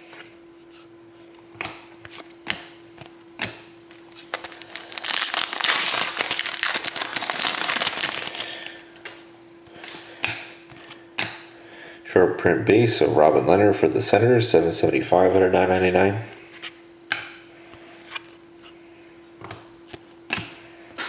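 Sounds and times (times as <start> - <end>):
faint steady hum: 0.0 - 21.0
wrapper tearing and crinkling: 4.2 - 8.8.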